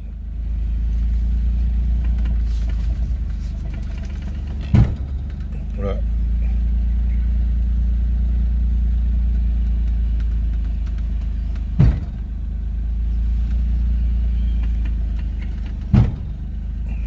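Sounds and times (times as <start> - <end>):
car engine running: 0.0 - 17.0
sharp steering clunk: 1.8 - 5.8, 9.3 - 12.3, 14.4 - 17.0.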